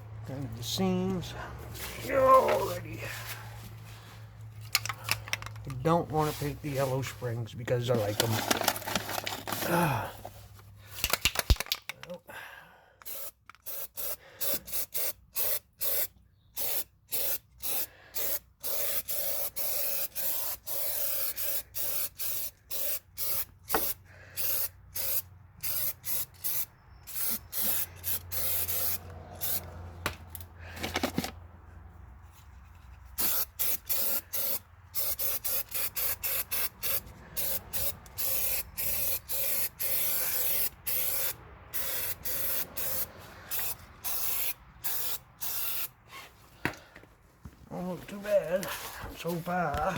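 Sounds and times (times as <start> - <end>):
spray coating hissing bursts: 13.1 - 29.6, 33.2 - 45.9.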